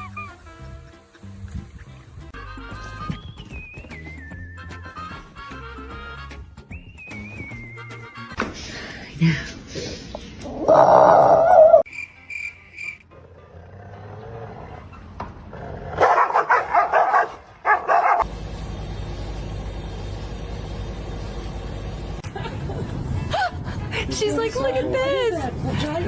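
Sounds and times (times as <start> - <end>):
dog barking and crying: 15.9 - 18.2
steady low hum: 18.2 - 24.5.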